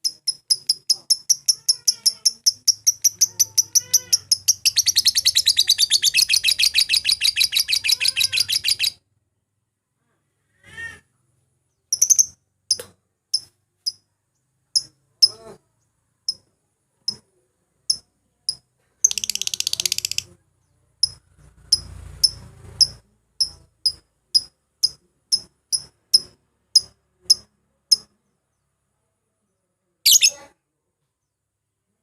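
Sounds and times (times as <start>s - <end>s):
bird chattering trill: 0.0s - 9.0s, 11.9s - 12.4s, 14.8s - 15.6s, 17.9s - 20.4s, 30.1s - 30.5s
bird chirping: 0.0s - 9.0s, 11.7s - 17.2s, 17.9s - 28.8s, 30.1s - 30.5s.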